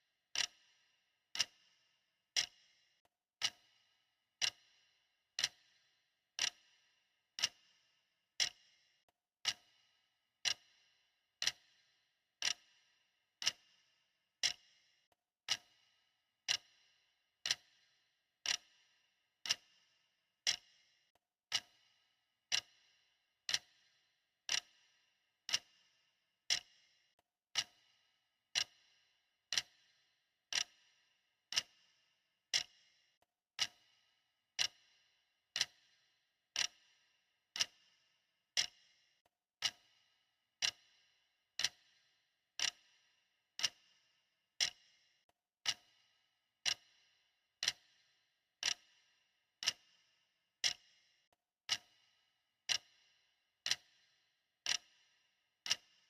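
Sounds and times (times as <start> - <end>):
clock ticking: 0.4 - 0.6, 1.4 - 1.6, 2.4 - 2.6, 3.4 - 3.7, 4.4 - 4.6, 5.4 - 5.6, 6.4 - 6.6, 7.4 - 7.6, 8.4 - 8.6, 9.4 - 9.7, 10.4 - 10.7, 12.4 - 12.6, 13.4 - 13.6, 14.4 - 14.6, 16.4 - 16.7, 17.4 - 17.7, 18.4 - 18.7, 19.4 - 19.7, 20.4 - 20.6, 22.5 - 22.8, 23.5 - 23.8, 24.5 - 24.7, 25.5 - 25.8, 27.5 - 27.8, 28.5 - 28.8, 29.5 - 29.8, 30.5 - 30.8, 31.5 - 31.8, 32.5 - 32.8, 33.6 - 33.9, 34.6 - 34.8, 35.6 - 35.9, 36.6 - 36.8, 37.6 - 37.8, 38.6 - 38.8, 40.6 - 40.9, 41.6 - 41.8, 42.6 - 42.8, 43.6 - 43.8, 44.6 - 44.8, 45.6 - 45.9, 46.6 - 46.9, 47.6 - 47.8, 48.6 - 48.9, 49.6 - 49.8, 51.6 - 52.0, 52.7 - 52.9, 53.7 - 53.9, 54.7 - 54.9, 55.6 - 55.9.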